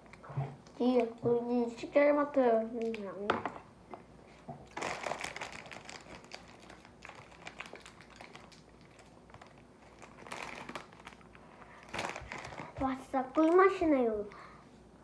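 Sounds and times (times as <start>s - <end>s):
packaging rustling: 4.7s - 13.8s.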